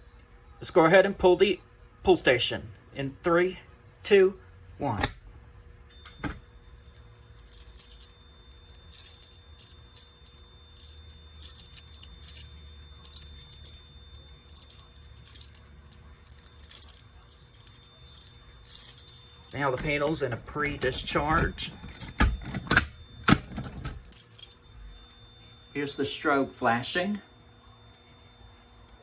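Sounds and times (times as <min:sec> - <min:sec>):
keys jangling: 0:05.9 - 0:24.7
high-pitched alarm tone: 0:05.9 - 0:29.0.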